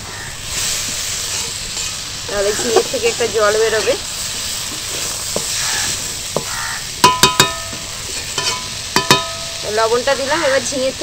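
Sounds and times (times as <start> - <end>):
vegetables sizzling in a pan: 0.0 - 11.0
spatula clinking against pan: 6.4 - 7.8, 8.4 - 9.5.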